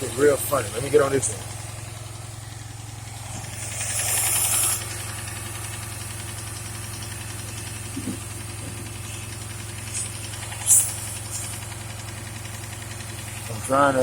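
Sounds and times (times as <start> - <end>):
car engine idling: 0.0 - 14.0
burst of hiss: 3.3 - 5.1, 9.9 - 11.7.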